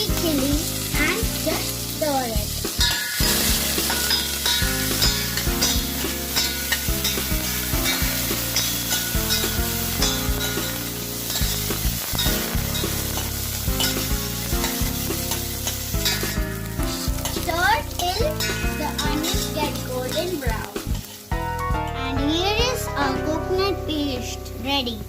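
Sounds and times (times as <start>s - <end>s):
onions sizzling in hot oil: 0.0s - 25.0s
spoon stirring and scraping pan: 2.7s - 21.3s.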